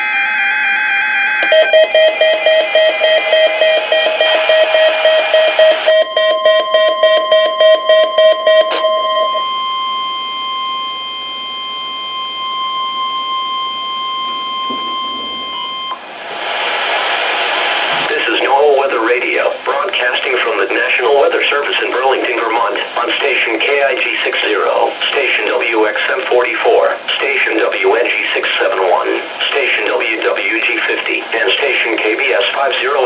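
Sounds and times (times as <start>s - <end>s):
steady warning alarm tone: 0.0s - 16.1s
rapidly pulsing beep: 0.1s - 16.0s.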